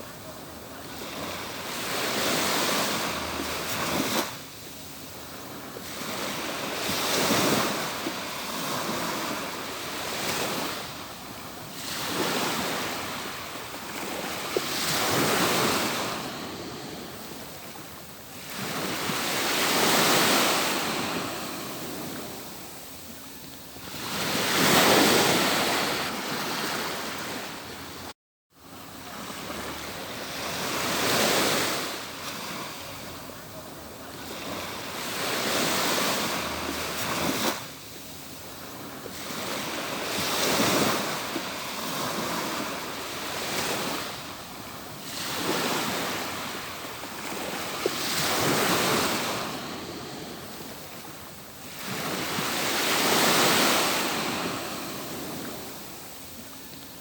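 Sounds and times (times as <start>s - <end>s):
ocean surf breaking on beach: 0.0s - 57.0s.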